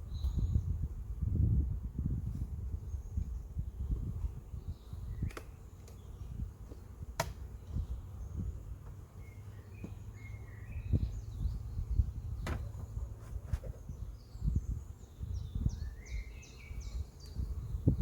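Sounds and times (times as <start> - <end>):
faint bird chirps: 9.2 - 18.0.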